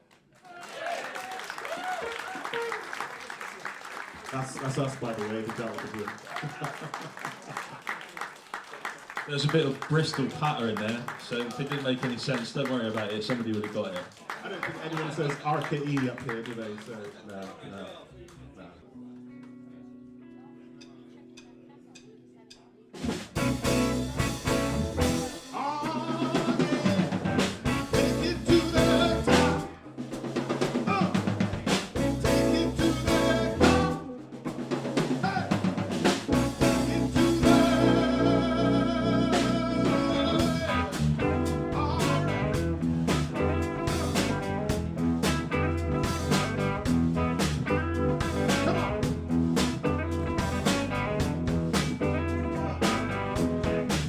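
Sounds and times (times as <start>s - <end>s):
live blues band playing: 22.9s - 54.0s.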